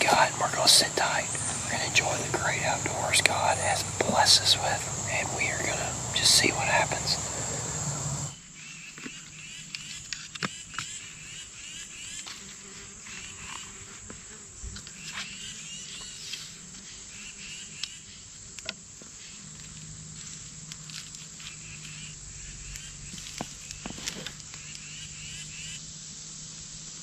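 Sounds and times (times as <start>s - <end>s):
faint clicks: 0.0s - 8.3s
low steady hum: 0.0s - 8.3s
insects chirping: 0.0s - 8.4s, 17.2s - 27.0s.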